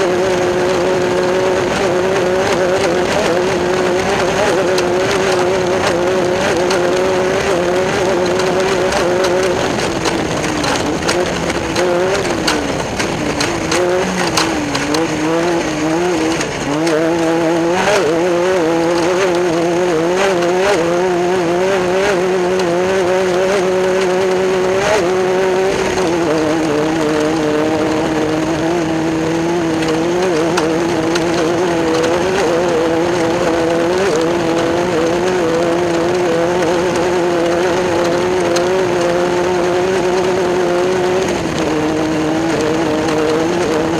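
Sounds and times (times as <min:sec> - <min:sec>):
knocks and rattles: 0:00.0 - 0:43.9
race car engine revving: 0:00.0 - 0:43.9.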